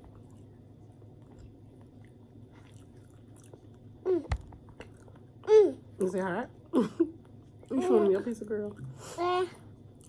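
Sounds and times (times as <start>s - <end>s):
people chewing food: 0.0s - 5.5s.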